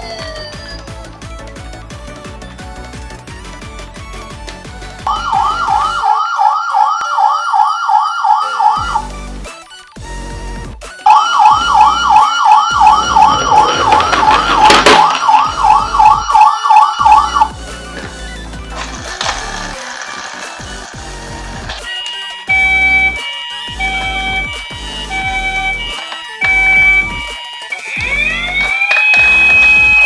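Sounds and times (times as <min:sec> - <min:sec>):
toy ambulance siren warbling: 0:00.0 - 0:01.0, 0:05.1 - 0:09.2, 0:11.0 - 0:18.0, 0:18.7 - 0:30.0.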